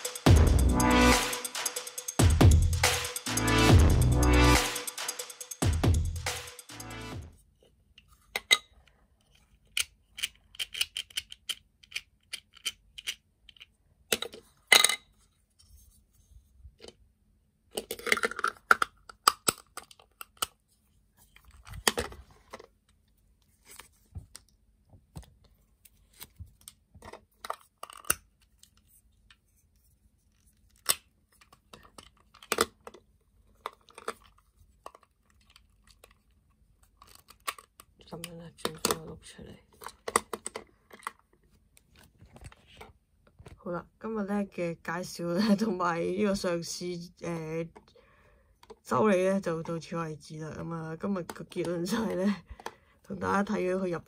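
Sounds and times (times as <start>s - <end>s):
plastic toy parts clicking: 8.3s - 15.0s, 17.7s - 20.6s, 26.6s - 28.8s, 30.7s - 39.1s.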